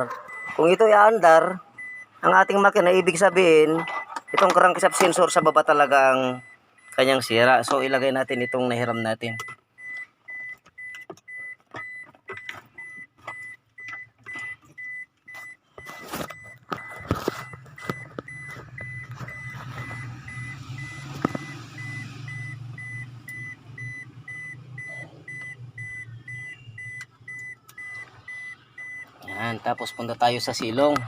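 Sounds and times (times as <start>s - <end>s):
rapid electronic beeping: 0.0s - 31.0s.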